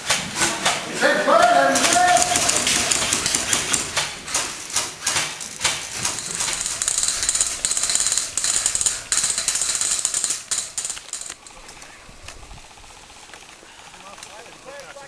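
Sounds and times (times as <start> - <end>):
airsoft guns firing: 1.6 - 11.6.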